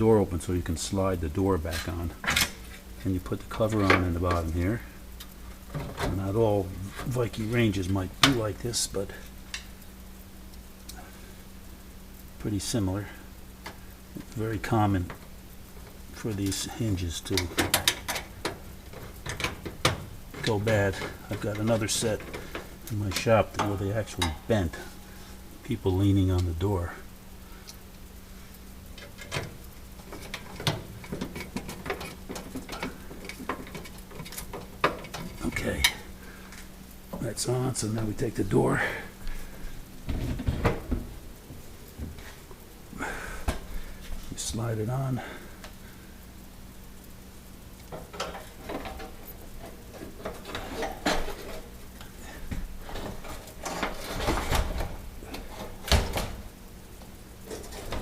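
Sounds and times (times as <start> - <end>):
hardware clicking and knocking: 17.4 - 24.4, 29.0 - 36.0
oven door metal clunks: 52.8 - 56.5.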